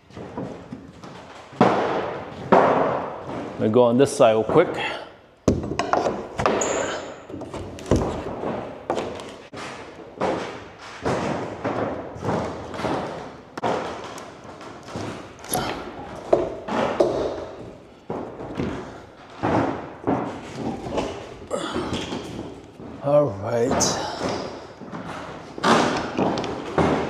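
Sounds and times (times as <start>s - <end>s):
wooden crate thuds and knocks: 0.1s - 3.8s.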